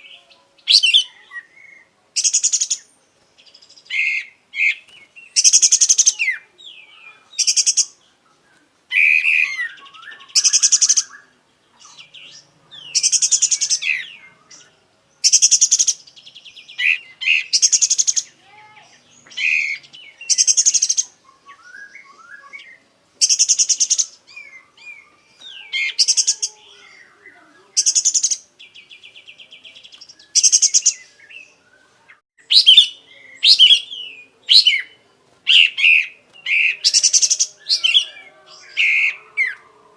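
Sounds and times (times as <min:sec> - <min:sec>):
bird singing: 0:00.0 - 0:39.9
rapid rattling bird phrases: 0:11.8 - 0:21.2, 0:23.2 - 0:24.1, 0:25.4 - 0:31.0.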